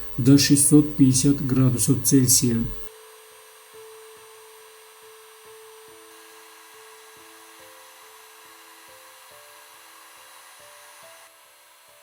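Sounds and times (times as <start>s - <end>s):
faint steady hiss: 0.0s - 2.9s
soft background music: 0.2s - 12.0s.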